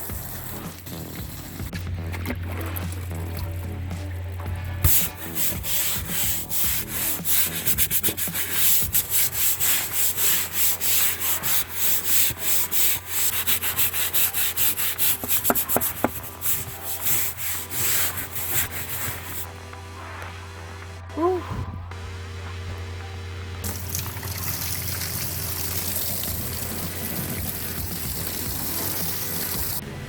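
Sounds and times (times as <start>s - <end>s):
stiff brush scrubbing a hull: 0.0s - 19.5s.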